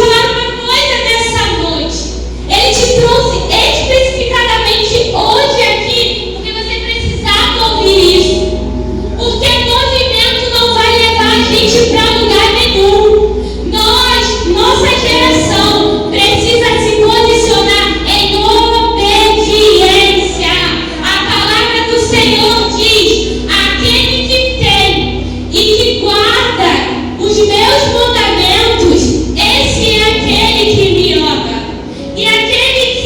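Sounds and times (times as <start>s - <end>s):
low musical backing: 0.0s - 33.0s.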